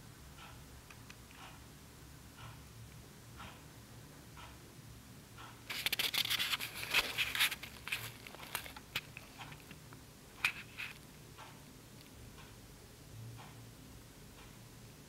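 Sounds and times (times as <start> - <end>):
dry rustling and scratching: 5.7 - 8.8
clicks and scrapes: 5.7 - 9.8.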